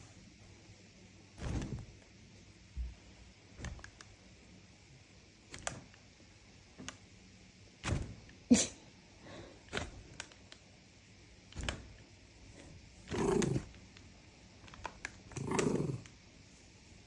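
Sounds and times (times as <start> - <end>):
animal giving short rough calls: 13.1 - 13.7, 15.4 - 16.0.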